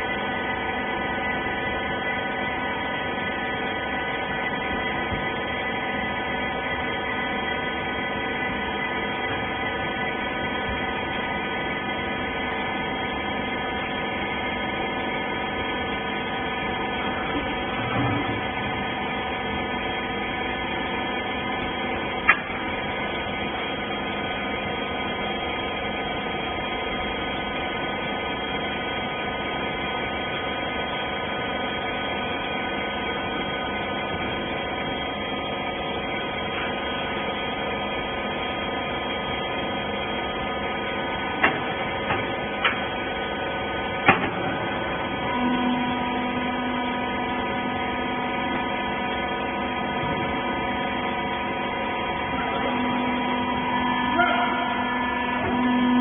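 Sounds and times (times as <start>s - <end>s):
baler machine humming: 0.0s - 56.0s.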